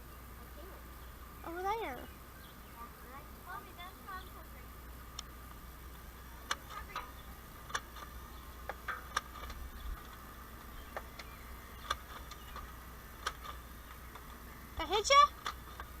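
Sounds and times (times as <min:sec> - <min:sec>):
faint steady hum: 0:00.0 - 0:16.0
sharp clicks and taps: 0:06.4 - 0:10.2, 0:10.9 - 0:14.4.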